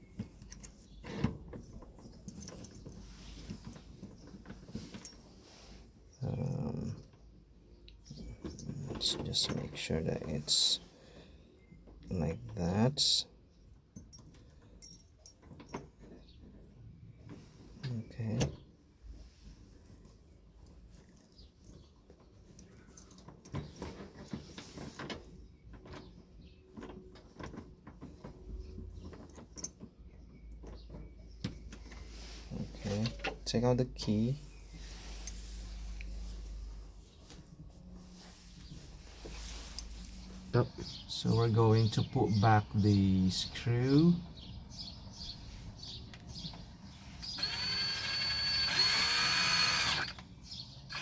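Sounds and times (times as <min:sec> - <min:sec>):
cordless drill motor whining: 0:47.2 - 0:51.0.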